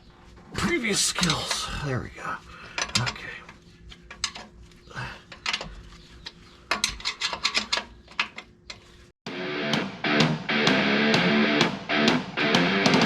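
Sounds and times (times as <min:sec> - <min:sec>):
wrench clicking on metal bolts: 0:06.7 - 0:08.8.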